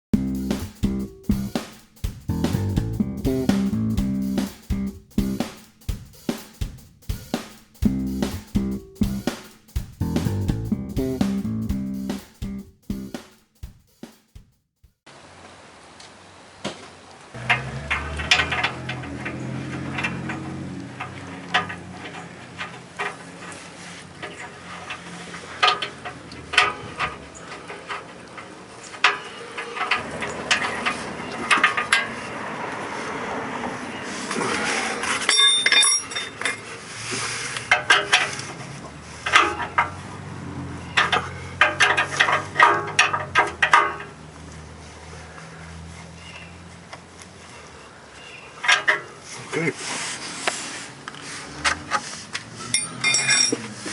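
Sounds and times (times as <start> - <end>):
metal hand tools clinking: 35.3 - 36.6, 52.7 - 53.7.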